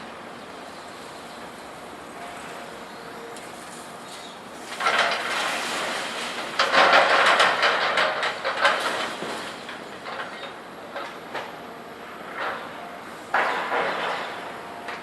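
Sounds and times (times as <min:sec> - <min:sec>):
scrap metal clattering and banging: 0:04.7 - 0:11.5, 0:12.3 - 0:15.0.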